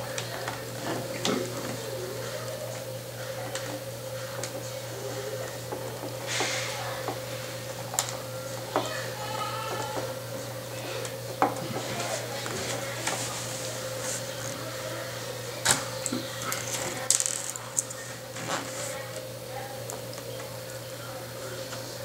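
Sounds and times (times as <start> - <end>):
steady hum: 0.0 - 22.0
small parts clicking and tapping: 16.5 - 18.0.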